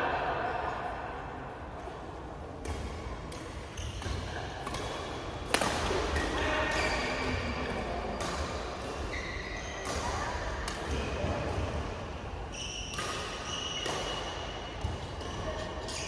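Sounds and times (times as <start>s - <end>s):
rackets smacking shuttlecock: 2.6s - 9.2s.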